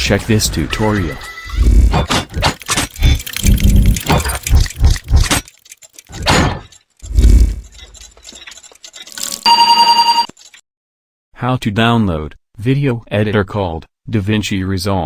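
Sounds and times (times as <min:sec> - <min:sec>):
electronic beep: 0:09.4 - 0:10.3.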